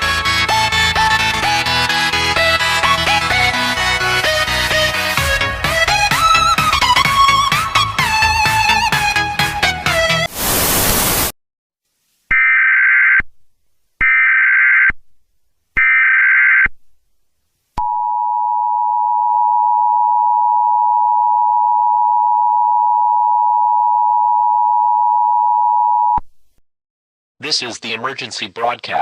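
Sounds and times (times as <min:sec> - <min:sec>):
loud static: 0:10.3 - 0:11.3.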